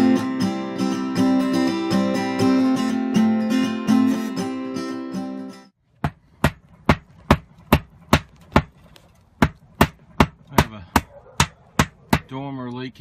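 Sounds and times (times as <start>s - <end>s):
hammer striking nails: 6.0s - 12.3s.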